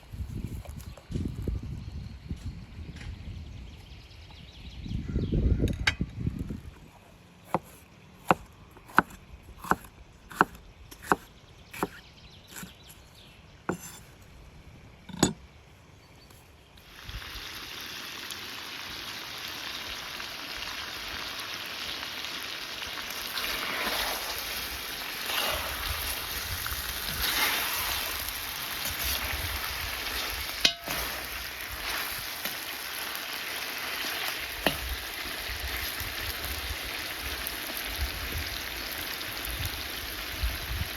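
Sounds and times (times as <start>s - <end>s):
food sizzling while frying: 16.8s - 40.9s.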